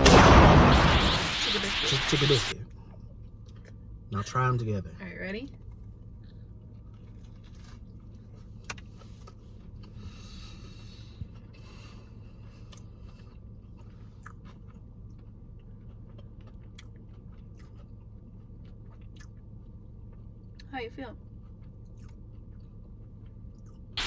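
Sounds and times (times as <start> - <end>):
low hum: 0.0 - 8.6
person chewing crispy food: 5.7 - 24.0.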